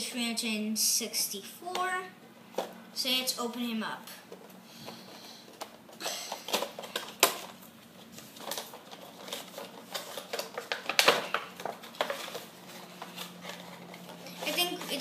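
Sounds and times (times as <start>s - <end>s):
packaging crinkling and rustling: 4.3s - 15.0s.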